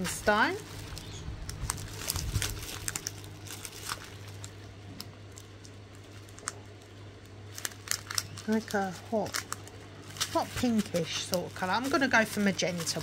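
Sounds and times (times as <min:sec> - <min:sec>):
low steady hum: 0:00.0 - 0:13.0
plastic bags crinkling: 0:00.0 - 0:13.0.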